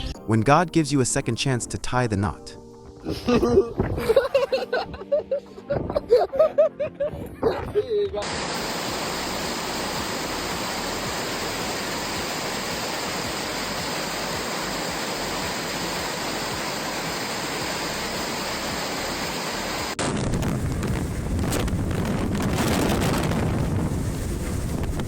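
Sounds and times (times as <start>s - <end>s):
steady rushing noise: 8.2s - 25.0s
wind buffeting microphone: 20.0s - 25.0s.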